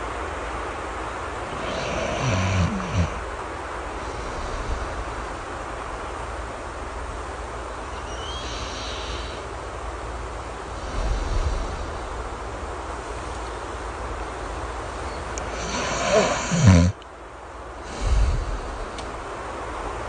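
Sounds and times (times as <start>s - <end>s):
steady rain: 0.0s - 20.0s
person snoring: 1.5s - 3.2s, 15.5s - 17.0s
soft breath: 3.9s - 5.6s, 10.7s - 12.4s, 17.8s - 19.3s.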